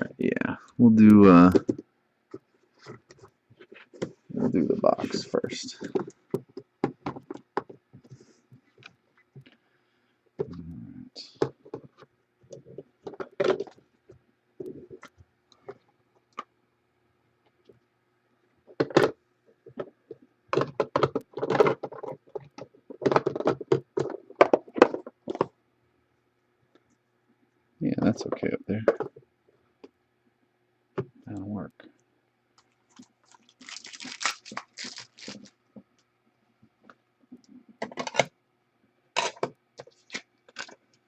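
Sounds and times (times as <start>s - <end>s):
rustling: 32.7s - 35.6s.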